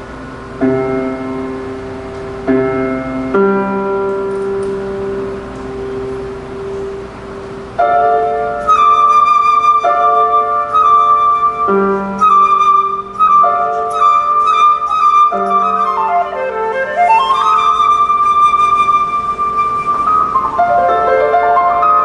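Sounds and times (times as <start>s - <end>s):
flute trilling high notes: 8.0s - 22.0s.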